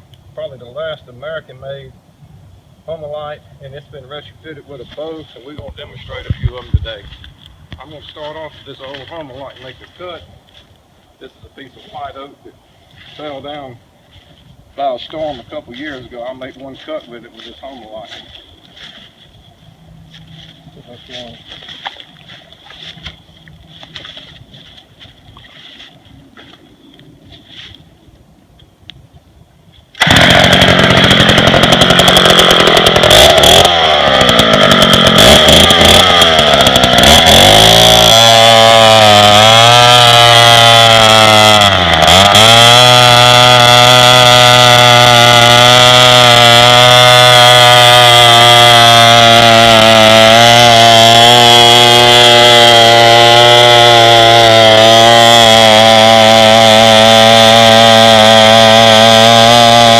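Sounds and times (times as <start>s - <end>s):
chainsaw cutting wood: 30.0s - 59.9s.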